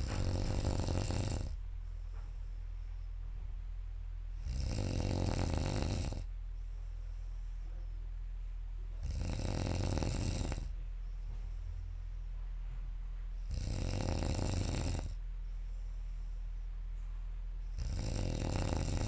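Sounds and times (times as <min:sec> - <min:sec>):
person snoring loudly: 0:00.0 - 0:01.6, 0:04.4 - 0:06.3, 0:09.0 - 0:10.7, 0:13.4 - 0:15.2, 0:17.8 - 0:19.0
steady low hum: 0:00.0 - 0:19.0.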